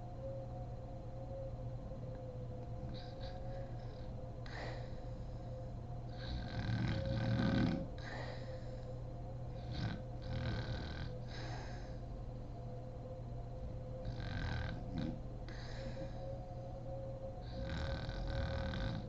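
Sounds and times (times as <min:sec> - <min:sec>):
steady low hum: 0:00.0 - 0:19.0
woman snoring: 0:06.1 - 0:08.6, 0:09.6 - 0:12.0, 0:14.0 - 0:16.1, 0:17.4 - 0:19.0.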